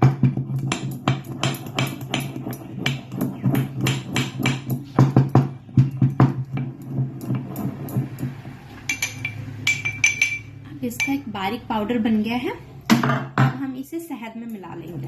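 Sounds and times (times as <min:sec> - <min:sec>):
pestle pounding in a mortar: 0:00.0 - 0:10.4.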